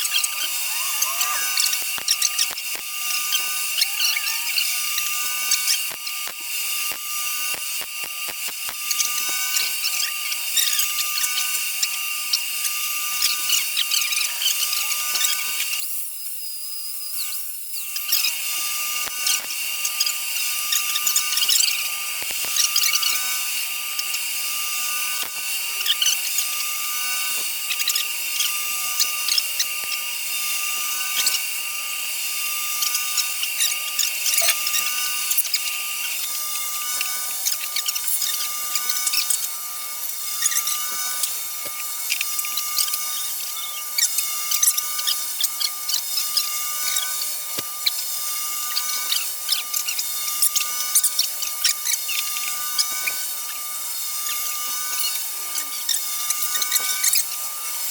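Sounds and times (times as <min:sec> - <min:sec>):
steady whine: 0:00.0 - 0:07.0
welder arc crackling and sizzling: 0:00.0 - 0:57.9.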